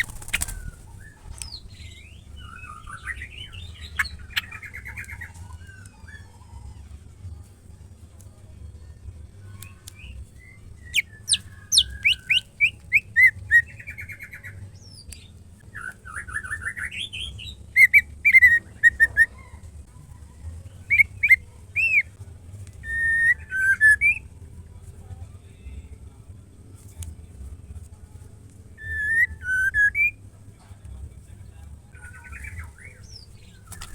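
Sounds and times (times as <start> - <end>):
steady low hum: 0.0 - 33.9
bird singing whistled notes: 9.9 - 19.6, 20.9 - 22.1, 22.8 - 24.3, 28.8 - 30.2.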